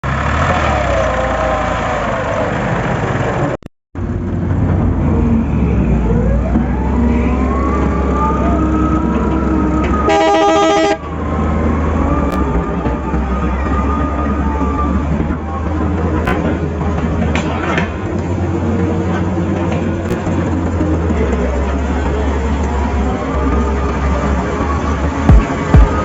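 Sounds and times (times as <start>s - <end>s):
heavy machinery engine whining: 0.0s - 26.0s
horn sounding: 9.9s - 11.3s.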